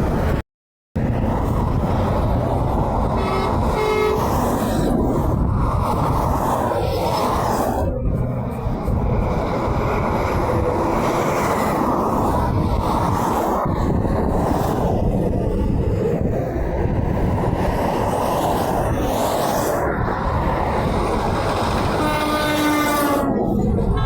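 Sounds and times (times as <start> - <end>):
heavy highway traffic rumble: 0.0 - 0.4, 1.0 - 24.0
truck horn blowing: 3.1 - 4.4, 21.9 - 23.4.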